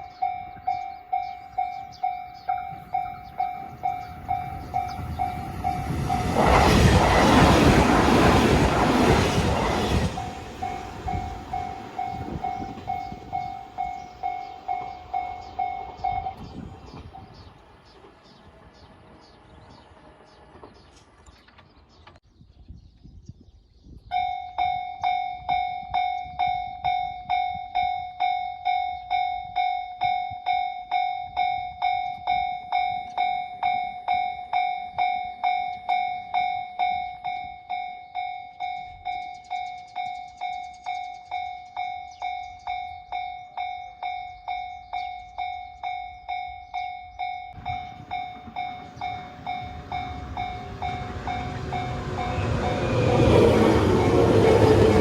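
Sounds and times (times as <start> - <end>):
approaching train rumble: 0.0 - 22.3, 43.9 - 55.0
level crossing bell ringing: 10.2 - 16.4, 40.0 - 54.5.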